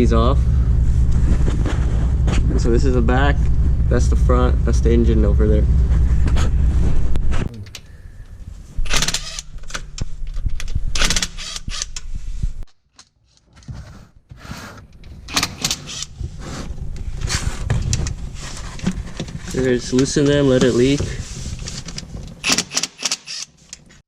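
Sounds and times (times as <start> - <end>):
low rumble: 0.0 - 12.6, 14.9 - 22.4
tools loosening bolts: 8.9 - 12.0, 21.8 - 23.9.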